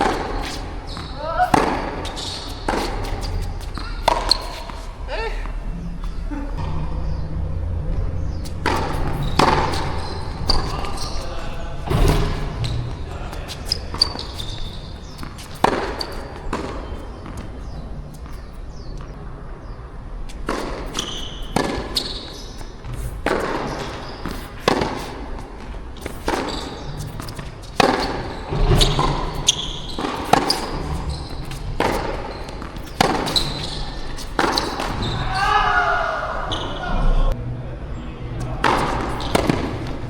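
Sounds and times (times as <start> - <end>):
tennis ball struck by rackets: 0.0 - 5.6, 8.3 - 19.1, 20.3 - 35.3, 38.4 - 40.0
short high squeaks: 0.2 - 4.9, 8.4 - 17.4, 20.9 - 23.1, 26.0 - 35.6
wind rumble on microphone: 5.5 - 13.9.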